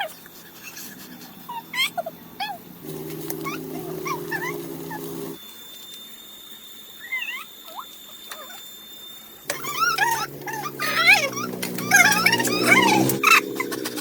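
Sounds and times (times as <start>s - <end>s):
puppy whimpering: 0.0s - 5.1s, 9.5s - 14.0s
low steady hum: 0.5s - 5.4s, 9.5s - 14.0s.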